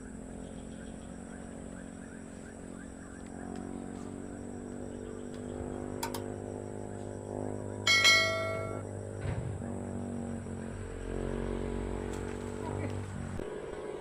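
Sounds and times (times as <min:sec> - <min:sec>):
steady low hum: 0:00.0 - 0:14.0
metallic strike ringing: 0:07.9 - 0:08.8.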